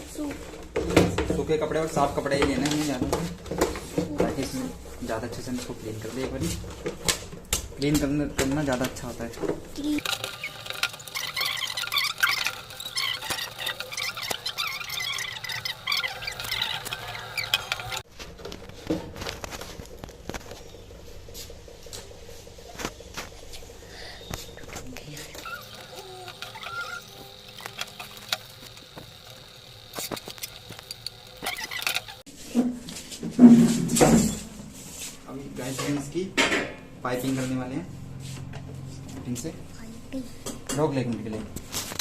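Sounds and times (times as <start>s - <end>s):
short squeaks: 10.0s - 18.0s, 25.4s - 32.3s.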